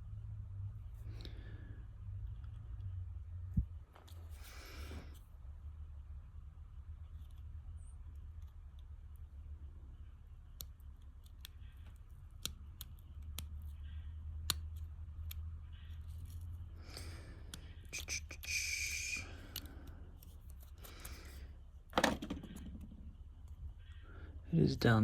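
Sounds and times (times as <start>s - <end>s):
small sharp handling clicks: 10.4s - 16.5s, 19.0s - 24.0s.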